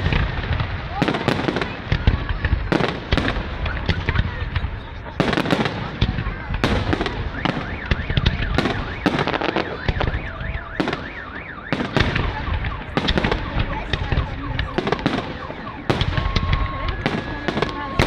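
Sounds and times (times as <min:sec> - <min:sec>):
warbling alarm: 0:07.0 - 0:18.0.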